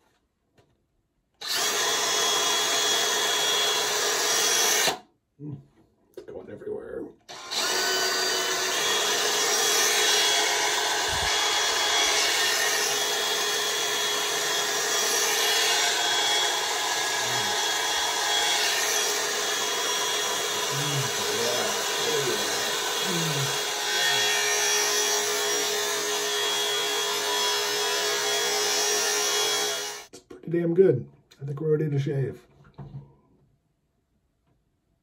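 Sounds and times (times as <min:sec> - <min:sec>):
power drill whirring: 0:01.4 - 0:05.1, 0:07.3 - 0:30.1.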